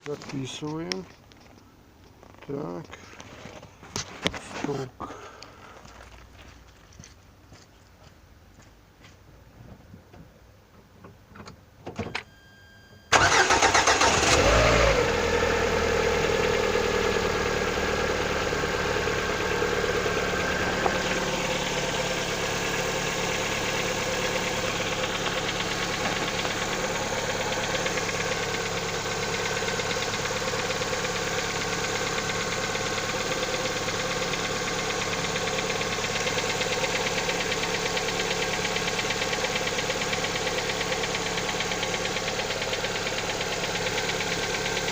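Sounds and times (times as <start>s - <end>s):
car engine starting and idling: 13.1s - 44.9s
engine knock: 20.7s - 44.9s.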